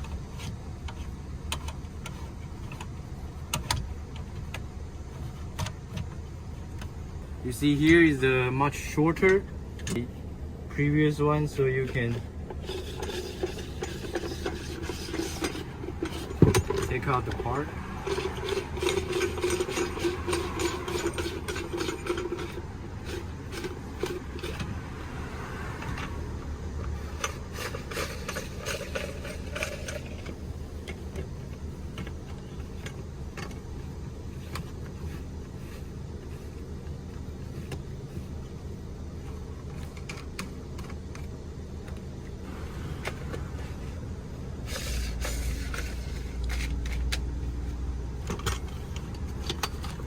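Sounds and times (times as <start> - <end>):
steady low hum: 0.0 - 50.0
metal frame parts clicking and rattling: 11.9 - 24.8, 26.9 - 33.6, 48.2 - 50.0.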